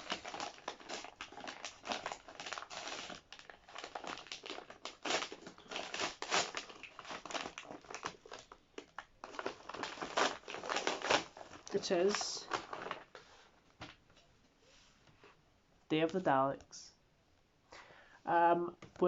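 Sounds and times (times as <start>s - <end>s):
packaging crinkling and rustling: 0.0s - 14.0s.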